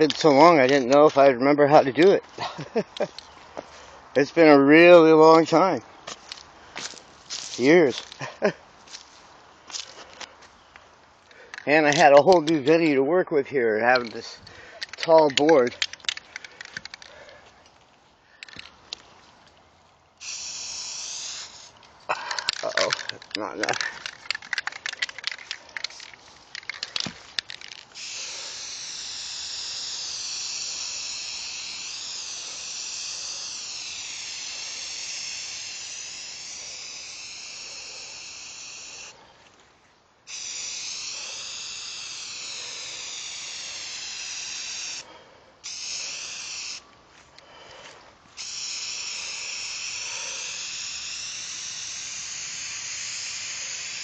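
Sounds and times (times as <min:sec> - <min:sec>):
quick clicks: 0:14.8 - 0:17.2, 0:22.2 - 0:28.0
spray can hissing: 0:20.2 - 0:21.8, 0:22.4 - 0:39.2, 0:40.3 - 0:46.8, 0:48.4 - 0:54.0.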